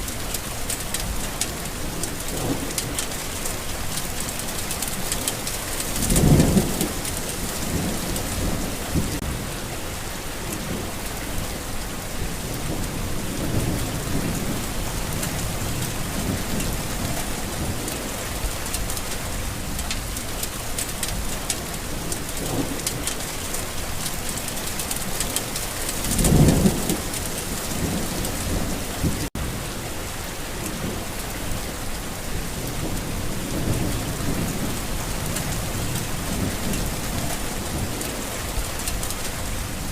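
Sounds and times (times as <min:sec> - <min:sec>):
steady rain falling: 0:00.0 - 0:39.9
thunder rumbling: 0:04.9 - 0:09.5.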